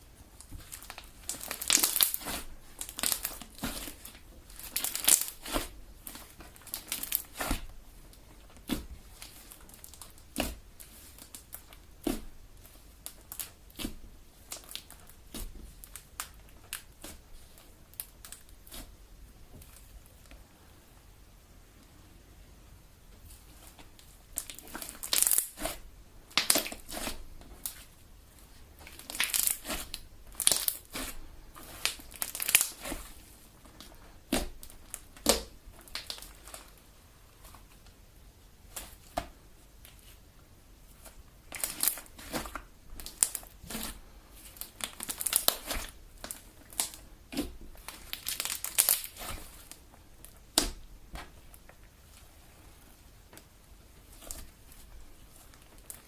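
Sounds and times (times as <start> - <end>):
slime squelching by hand: 0.2 - 19.9, 23.3 - 37.9, 40.9 - 56.0.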